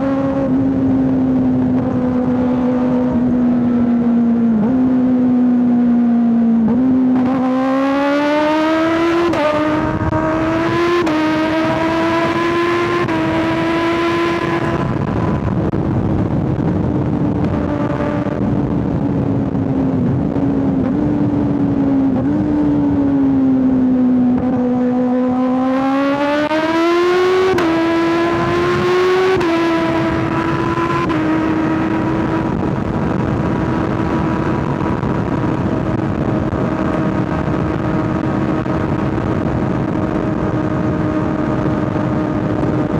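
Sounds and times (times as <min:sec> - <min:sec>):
motorcycle engine accelerating: 0:00.0 - 0:42.9.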